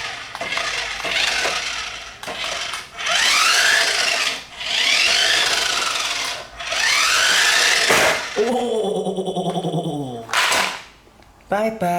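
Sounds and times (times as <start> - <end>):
toy car electric motor whirring: 0.0 - 8.5.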